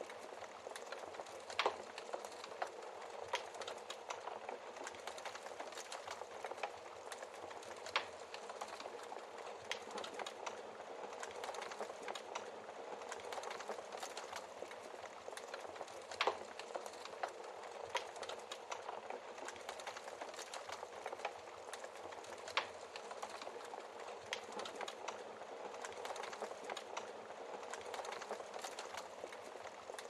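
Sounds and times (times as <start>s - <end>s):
wood fire crackling: 0.0s - 30.0s.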